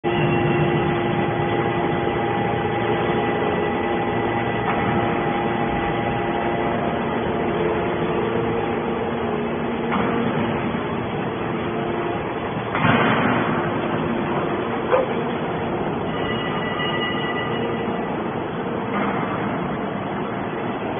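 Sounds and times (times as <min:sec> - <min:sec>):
whining pump tones: 0:00.0 - 0:12.8
hydraulic baler machine drone: 0:00.0 - 0:20.9.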